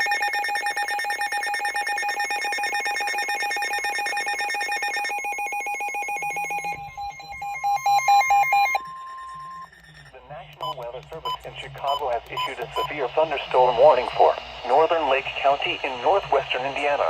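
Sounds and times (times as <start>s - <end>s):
rapid electronic beeping: 0.0s - 17.0s
trilling electronic alarm: 0.0s - 17.0s.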